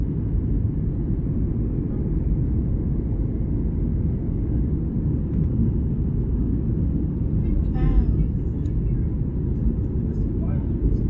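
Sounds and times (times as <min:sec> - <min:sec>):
airliner cabin engine rumble: 0:00.0 - 0:11.0.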